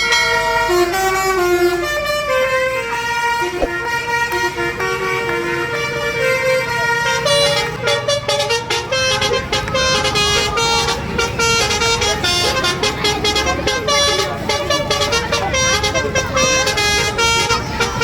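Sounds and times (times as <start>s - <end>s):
musical air horns playing tunes: 0.0s - 18.0s.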